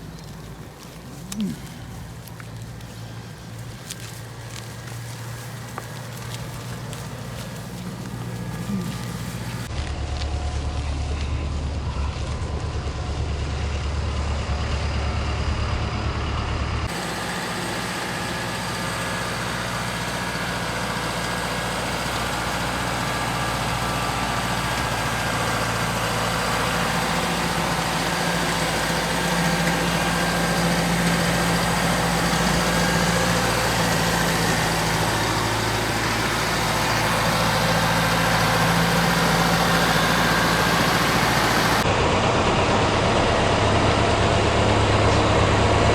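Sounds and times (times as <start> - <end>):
vehicle engine running: 0.0 - 45.9.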